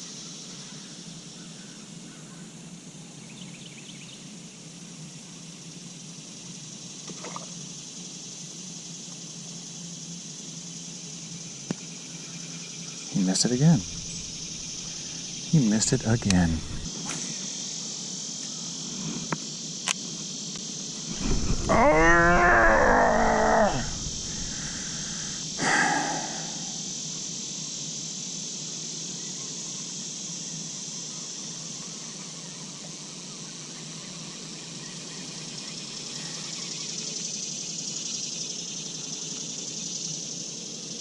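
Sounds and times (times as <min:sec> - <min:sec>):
high-pitched insect chorus: 0:00.0 - 0:41.0
short loud noise: 0:21.1 - 0:25.4.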